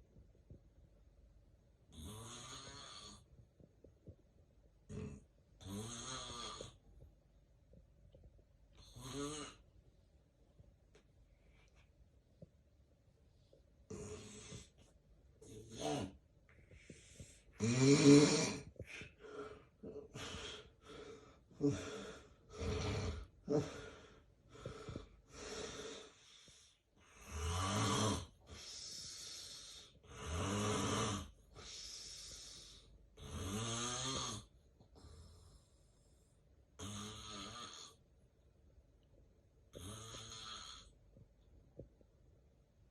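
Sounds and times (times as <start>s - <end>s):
man snoring: 1.9s - 3.3s, 4.9s - 6.8s, 8.8s - 9.6s, 13.9s - 14.7s, 15.4s - 16.2s, 17.5s - 19.0s, 21.6s - 23.8s, 27.1s - 34.5s, 36.8s - 38.0s, 39.7s - 40.9s.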